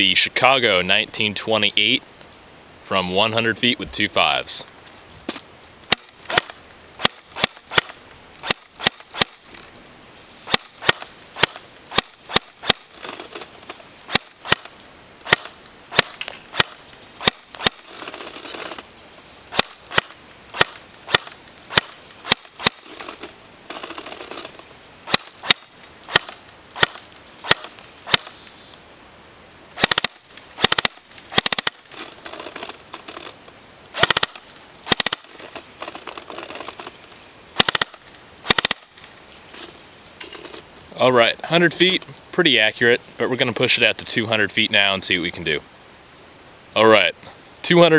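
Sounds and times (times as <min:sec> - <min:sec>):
airsoft gun shots cracking: 0:05.9 - 0:09.4, 0:10.4 - 0:12.9, 0:14.1 - 0:17.8, 0:19.5 - 0:22.9, 0:25.0 - 0:28.4, 0:29.8 - 0:31.8, 0:33.9 - 0:35.3, 0:37.6 - 0:39.0.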